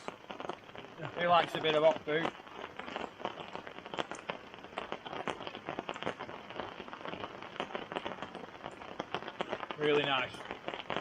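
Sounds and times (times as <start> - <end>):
rain falling: 0.0 - 11.0.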